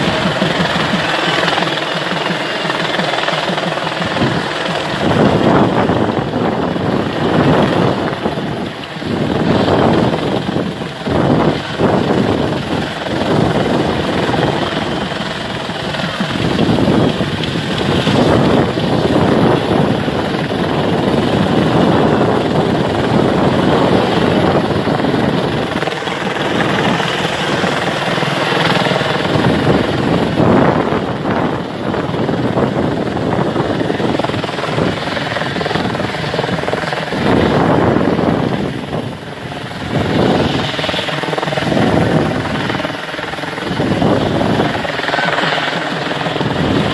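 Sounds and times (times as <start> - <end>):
helicopter flying overhead: 0.0 - 46.9.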